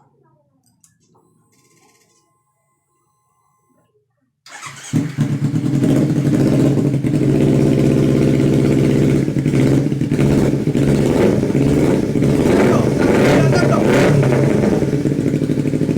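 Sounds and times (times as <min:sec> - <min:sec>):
motorcycle engine starting and running: 0:04.5 - 0:15.9.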